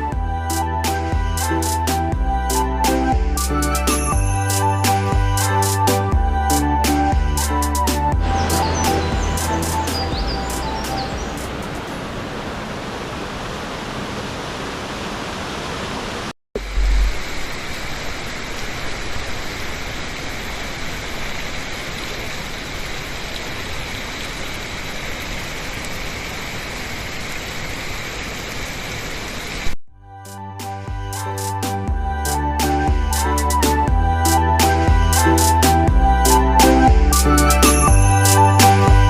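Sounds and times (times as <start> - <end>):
waterfall rushing: 3.6 - 29.7.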